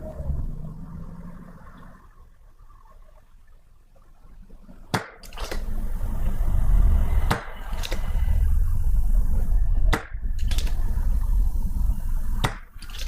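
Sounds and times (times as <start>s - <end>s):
low rumbling noise: 0.0s - 13.0s
sharp clicks: 7.3s - 8.1s, 9.9s - 10.8s.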